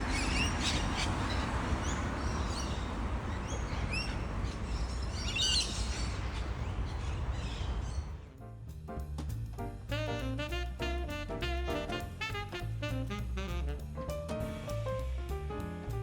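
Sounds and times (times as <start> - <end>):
birds chirping: 0.0 - 8.4
low outdoor rumble: 0.0 - 16.0.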